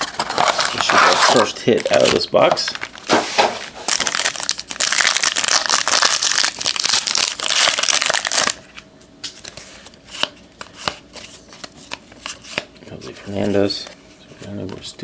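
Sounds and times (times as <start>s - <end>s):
plastic wrapper crinkling: 0.0s - 3.2s, 3.8s - 8.8s.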